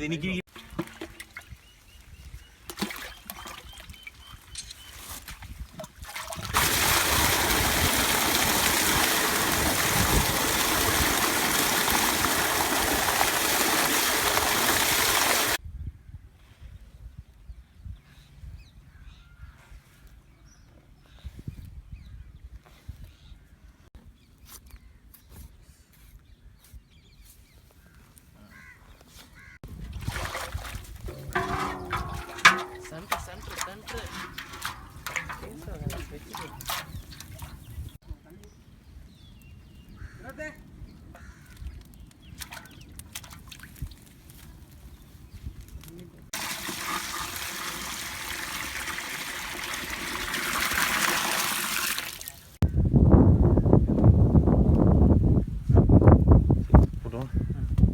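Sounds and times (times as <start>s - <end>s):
water pouring in a stream: 0.5s - 1.6s, 5.2s - 15.6s, 29.7s - 37.8s, 42.4s - 44.4s, 46.3s - 52.6s.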